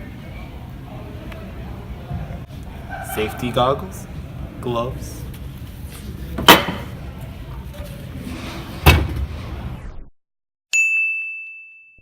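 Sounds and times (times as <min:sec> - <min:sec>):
bell ding: 0:10.8 - 0:12.0.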